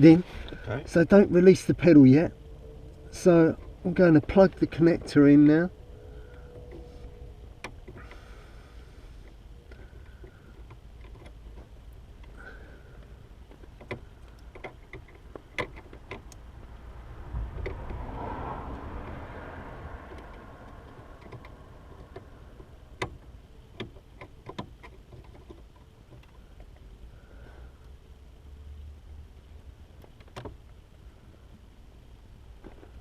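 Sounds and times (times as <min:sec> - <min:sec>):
low steady hum: 0:00.0 - 0:33.0
small clicks and handling noises: 0:09.2 - 0:12.4, 0:13.0 - 0:16.4, 0:20.1 - 0:26.9
broad rushing noise: 0:16.5 - 0:22.8.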